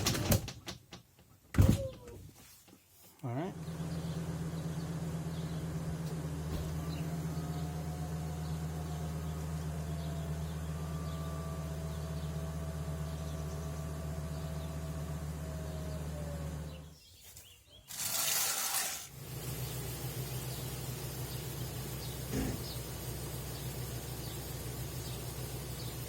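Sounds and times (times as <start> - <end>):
electric motor humming: 17.9 - 26.0.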